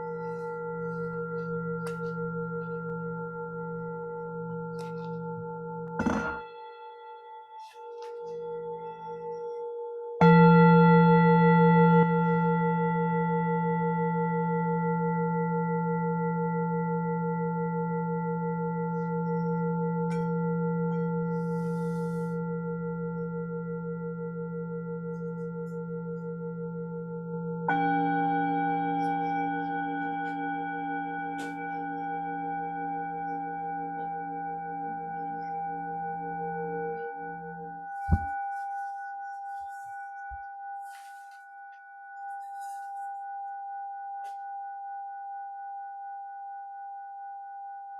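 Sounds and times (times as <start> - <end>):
higher singing bowl ringing: 0.0 - 47.9
knock stopping singing bowl: 38.1 - 38.5.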